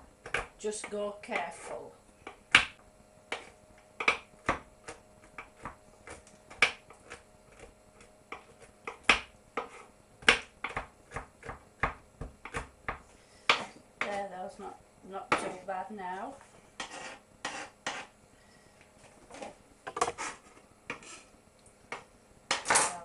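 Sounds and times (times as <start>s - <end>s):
knife chopping on a board: 1.4s - 7.7s, 8.3s - 14.2s, 16.8s - 18.1s.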